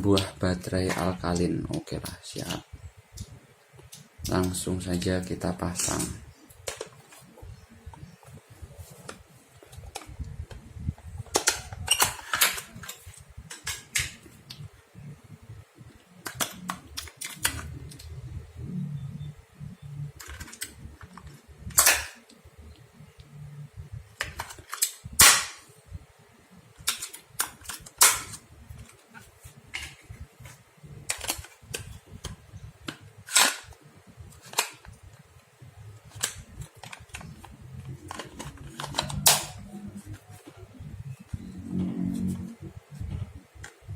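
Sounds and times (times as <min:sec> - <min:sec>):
plastic clicks and snaps: 0:09.0 - 0:14.7, 0:15.9 - 0:18.2, 0:26.8 - 0:29.0, 0:29.7 - 0:35.3, 0:36.0 - 0:41.4, 0:43.0 - 0:43.9.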